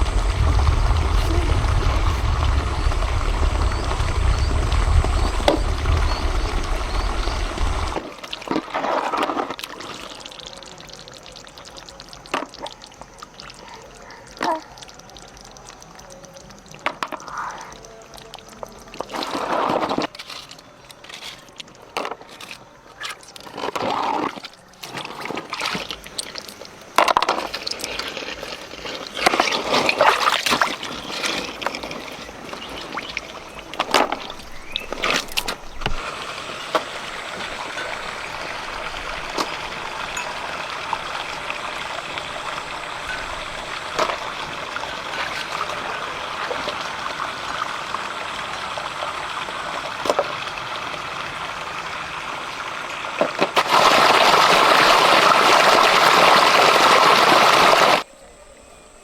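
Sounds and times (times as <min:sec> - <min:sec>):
water splashing and sloshing: 0:00.0 - 0:58.1
running river water: 0:00.0 - 0:59.0.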